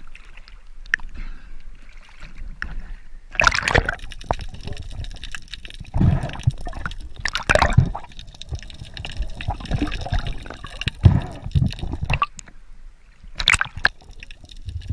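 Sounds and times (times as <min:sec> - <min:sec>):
water splashing and dripping: 0:03.3 - 0:12.5, 0:13.4 - 0:14.9.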